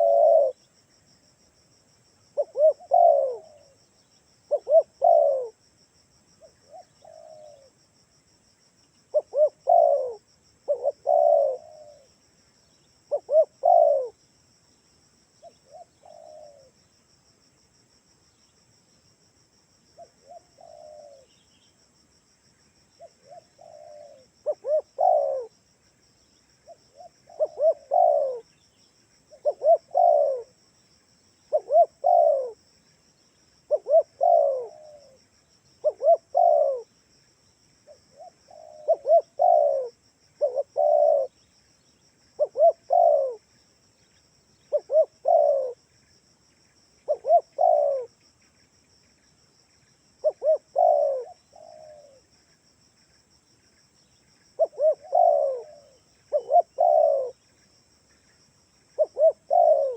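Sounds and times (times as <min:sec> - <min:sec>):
dove cooing: 0:00.0 - 0:00.7, 0:02.4 - 0:03.8, 0:04.5 - 0:05.6, 0:06.4 - 0:07.8, 0:09.1 - 0:12.2, 0:13.1 - 0:14.2, 0:15.4 - 0:16.8, 0:20.0 - 0:21.4, 0:23.0 - 0:25.6, 0:26.6 - 0:28.6, 0:29.3 - 0:30.6, 0:31.5 - 0:32.6, 0:33.7 - 0:35.2, 0:35.8 - 0:36.9, 0:37.9 - 0:41.4, 0:42.4 - 0:43.5, 0:44.6 - 0:45.8, 0:47.0 - 0:48.2, 0:50.2 - 0:52.3, 0:54.6 - 0:57.4, 0:59.0 - 0:59.9.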